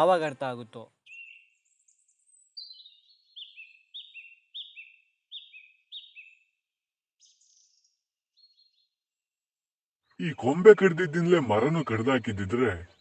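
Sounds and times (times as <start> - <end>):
small bird chirping: 0.9 - 6.6, 7.2 - 9.0.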